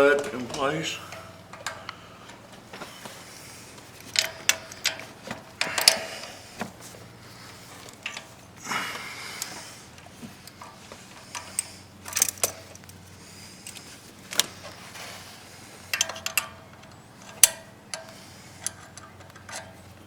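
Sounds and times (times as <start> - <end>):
tools clinking on metal: 15.9 - 19.8.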